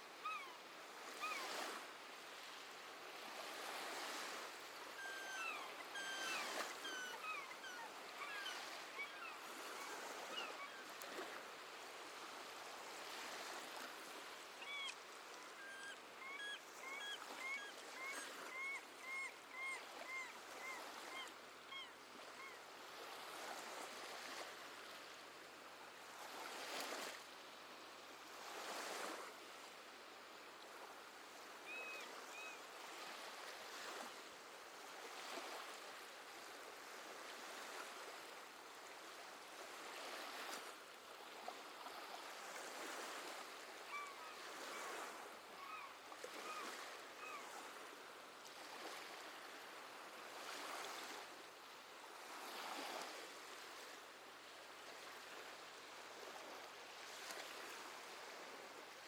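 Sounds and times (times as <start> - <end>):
gentle sea waves washing in: 0.0 - 59.0
seabirds calling: 0.2 - 1.6, 4.7 - 11.0, 14.6 - 22.7, 43.8 - 45.0.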